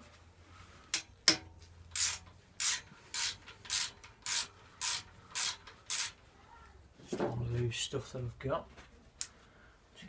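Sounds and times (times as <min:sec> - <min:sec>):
ratchet wrench rasping: 0:01.9 - 0:06.2.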